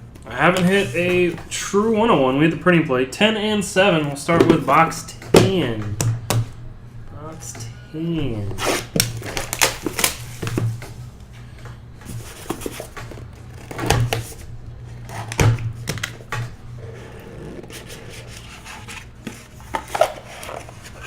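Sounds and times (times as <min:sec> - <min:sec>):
cardboard and cards rubbing: 0:12.0 - 0:15.3, 0:16.8 - 0:21.0.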